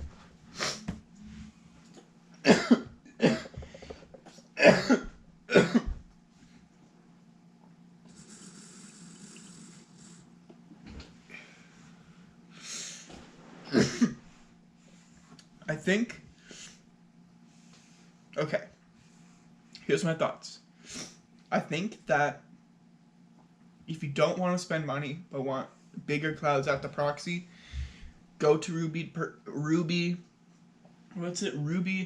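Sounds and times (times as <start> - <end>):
low hum: 0.0 - 12.5
man coughing: 2.4 - 3.8, 4.6 - 6.0, 13.7 - 14.2.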